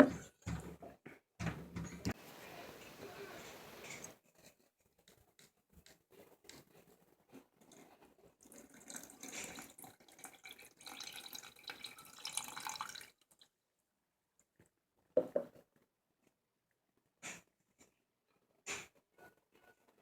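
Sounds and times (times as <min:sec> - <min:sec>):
liquid trickling into cup: 0:08.4 - 0:13.4.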